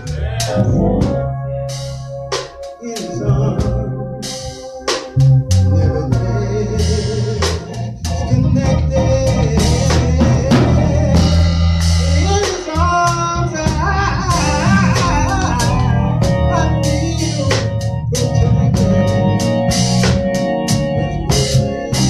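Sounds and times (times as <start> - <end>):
bass: 0.0 - 22.0
drum kit: 0.0 - 22.0
organ chords: 0.0 - 22.0
wavering melody line: 0.0 - 22.0.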